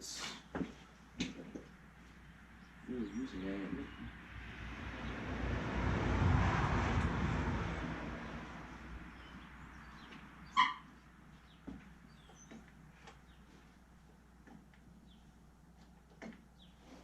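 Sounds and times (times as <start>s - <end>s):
low rumbling noise: 2.3s - 10.5s.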